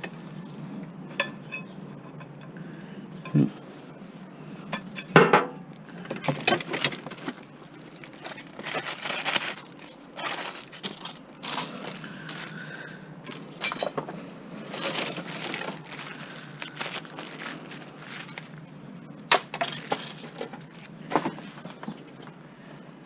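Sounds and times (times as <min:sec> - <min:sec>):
rustling: 0:05.9 - 0:18.8
scrap metal clattering: 0:06.0 - 0:12.6, 0:13.3 - 0:18.6.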